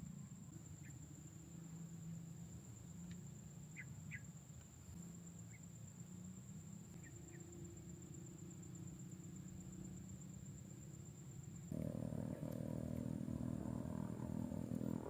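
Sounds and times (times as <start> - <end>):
high thin whine: 11.7 - 15.0
low rumble: 11.7 - 15.0.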